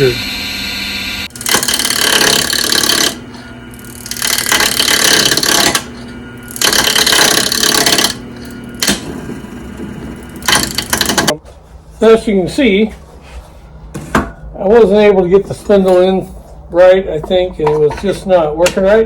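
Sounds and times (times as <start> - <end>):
wood lathe running: 0.0 - 11.4
turning tool scraping wood: 1.4 - 11.4
person talking: 12.0 - 13.0, 14.6 - 19.0.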